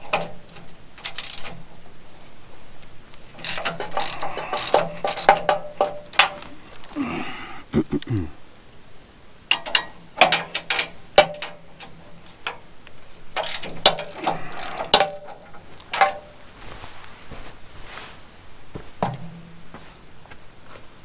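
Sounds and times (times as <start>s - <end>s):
hand ratchet clicking: 1.0s - 1.5s, 3.4s - 7.0s, 13.4s - 16.2s
metallic clanks: 3.4s - 6.6s, 13.4s - 16.4s.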